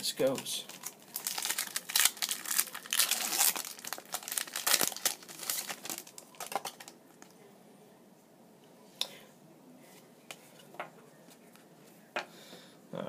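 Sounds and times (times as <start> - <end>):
plastic packaging tearing and crinkling: 0.2 - 7.0.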